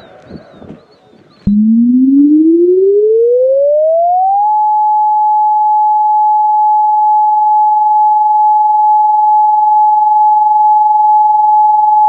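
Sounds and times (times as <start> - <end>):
electronic siren rising: 1.4 - 5.2.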